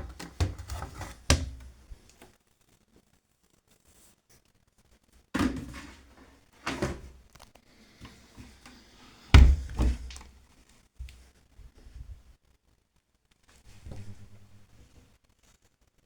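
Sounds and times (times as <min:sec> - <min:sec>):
wet laundry thumping in drum: 0:00.0 - 0:01.7, 0:05.4 - 0:06.0, 0:09.4 - 0:10.3.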